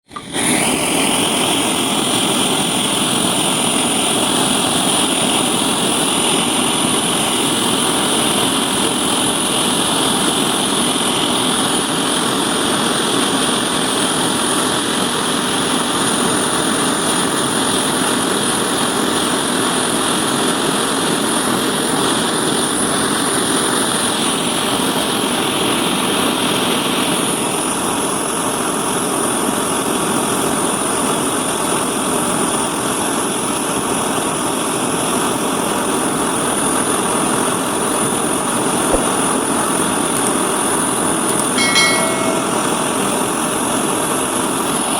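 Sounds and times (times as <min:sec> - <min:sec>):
gas torch flame roaring hiss: 0:00.1 - 0:26.4.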